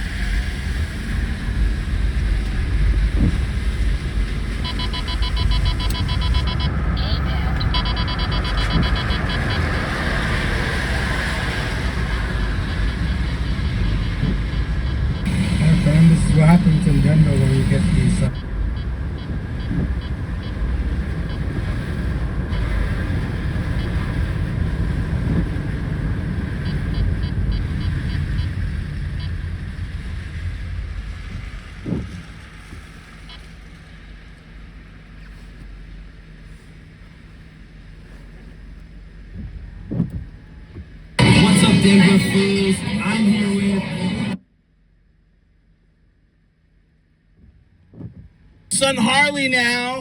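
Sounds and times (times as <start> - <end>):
road and tyre noise: 0.0 - 44.4
low engine rumble: 0.0 - 50.0.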